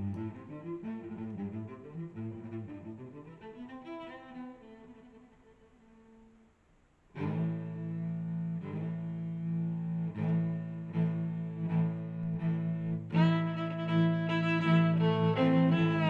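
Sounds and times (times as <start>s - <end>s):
bowed low strings: 0.0s - 3.8s, 7.1s - 16.0s.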